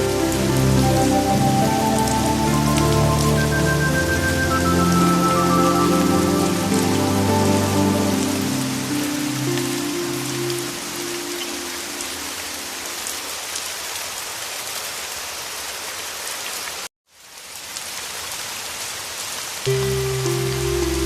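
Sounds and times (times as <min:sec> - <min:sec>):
low music notes: 0:00.0 - 0:12.2, 0:19.7 - 0:21.0
heavy rain: 0:00.0 - 0:21.0.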